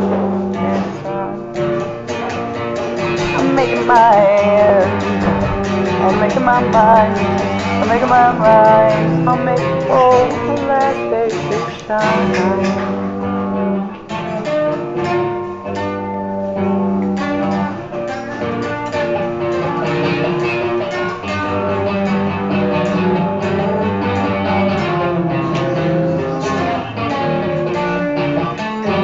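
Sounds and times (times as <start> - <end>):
strummed guitar music: 0.0 - 29.0.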